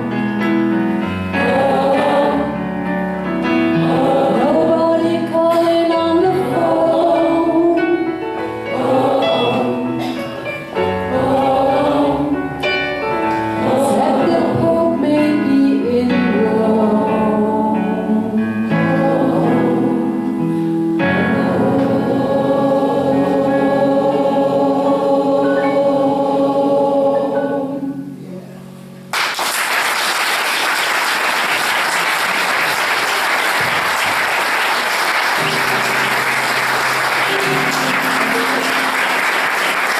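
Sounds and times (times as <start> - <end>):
choir singing: 1.2 - 28.2, 34.6 - 39.9
audience applause: 29.1 - 39.9.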